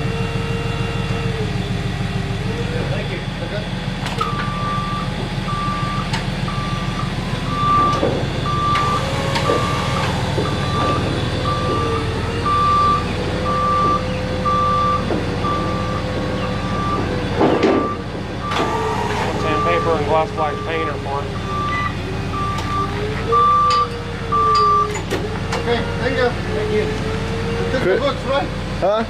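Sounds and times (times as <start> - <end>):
forklift backup alarm beeping: 4.2 - 25.0
steady low hum: 5.4 - 13.6
wavering whine: 7.3 - 13.4, 18.4 - 21.5.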